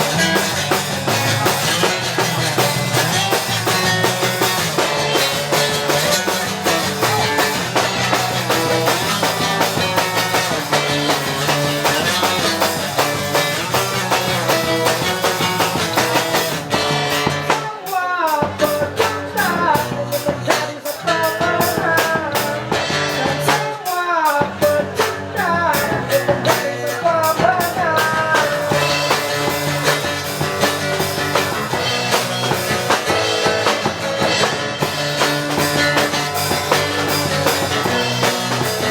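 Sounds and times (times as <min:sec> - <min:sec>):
lead guitar bending notes: 0:00.0 - 0:17.5, 0:28.5 - 0:38.9
acoustic pop-punk band: 0:00.0 - 0:38.9.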